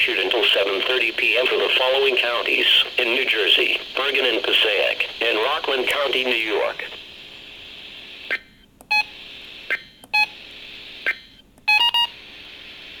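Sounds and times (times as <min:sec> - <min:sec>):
radio hiss: 0:00.0 - 0:08.4, 0:10.4 - 0:11.2, 0:12.2 - 0:13.0
touch-tone beeps: 0:08.9 - 0:09.1, 0:11.7 - 0:12.1.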